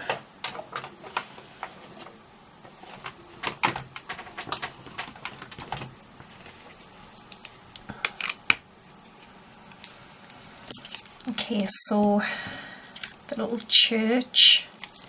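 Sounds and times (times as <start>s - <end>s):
craft supplies clicking and tapping: 3.0s - 5.9s.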